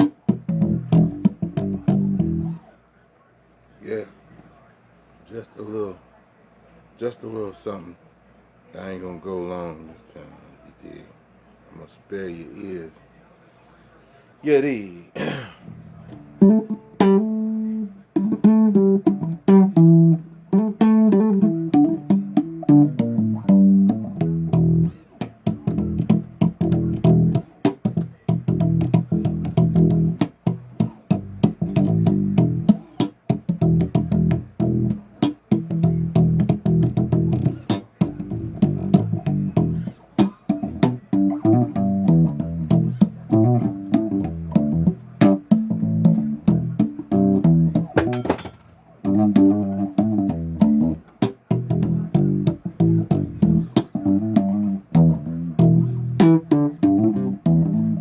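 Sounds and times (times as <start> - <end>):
bass guitar riffing: 0.0 - 2.6, 15.7 - 58.0.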